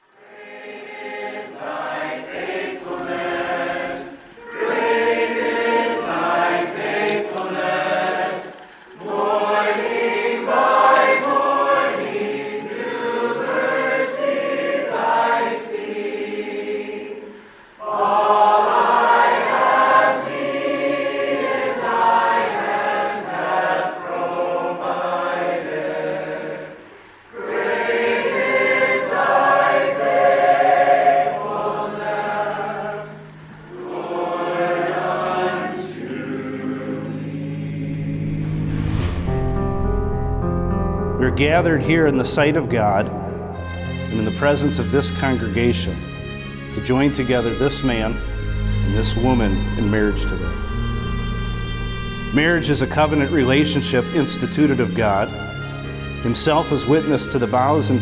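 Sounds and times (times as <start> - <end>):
choir singing: 0.0 - 58.0.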